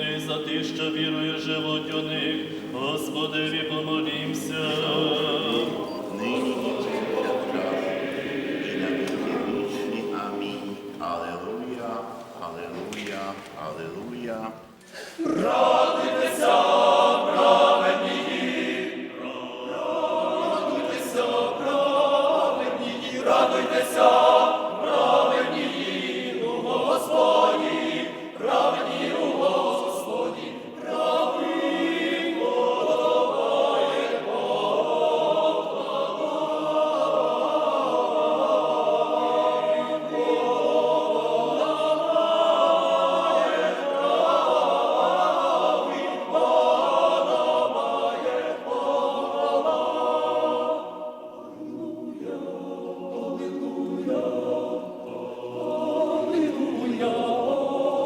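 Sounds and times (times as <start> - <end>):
choir singing liturgical chant: 0.0 - 58.0.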